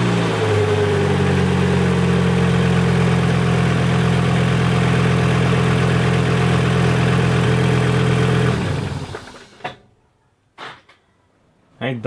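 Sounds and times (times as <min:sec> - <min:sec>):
car engine idling: 0:01.0 - 0:09.6.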